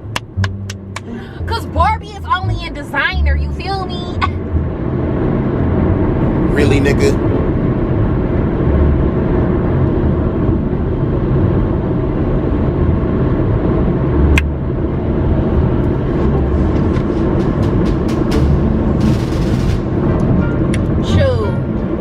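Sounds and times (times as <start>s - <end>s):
car engine and road rumble: 0.0s - 22.0s.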